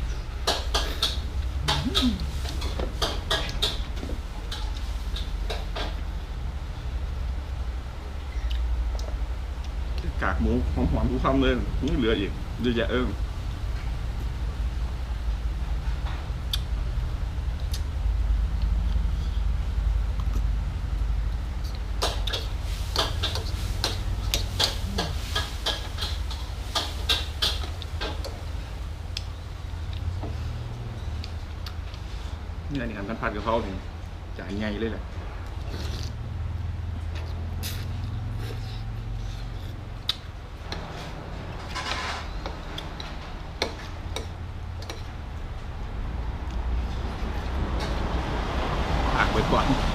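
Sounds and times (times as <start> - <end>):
low background hum: 0.0 - 49.9
low steady rumble: 0.0 - 49.9
sharp eating clicks: 39.6 - 40.8.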